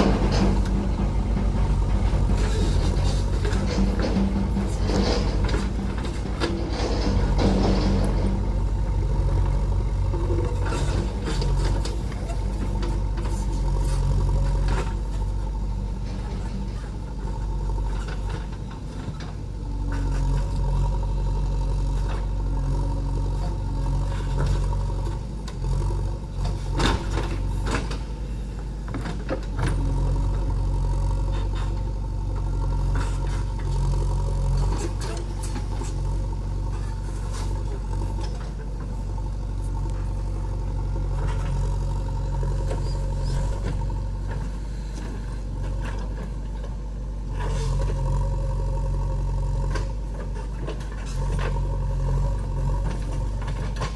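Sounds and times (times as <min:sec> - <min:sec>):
knocks and rattles: 0:00.0 - 0:15.2
diesel engine running: 0:00.0 - 0:53.9.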